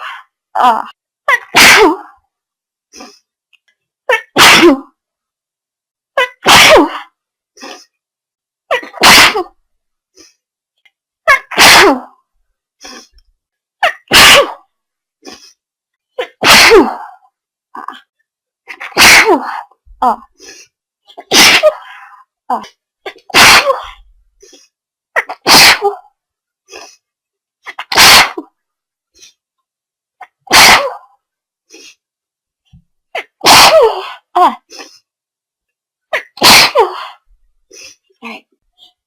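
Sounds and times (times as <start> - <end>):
person sneezing: 1.4 - 2.1, 4.2 - 4.9, 6.2 - 7.9, 8.7 - 9.6, 11.3 - 12.1, 13.8 - 14.6, 16.2 - 17.2, 18.7 - 19.6, 21.1 - 21.9, 23.1 - 24.0, 25.2 - 26.0, 27.7 - 28.5, 30.2 - 31.1, 33.2 - 34.9, 36.2 - 37.2.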